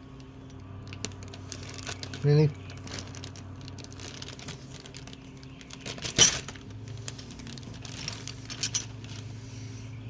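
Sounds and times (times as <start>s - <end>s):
plastic bag clicks and rustles: 0.1s - 9.3s.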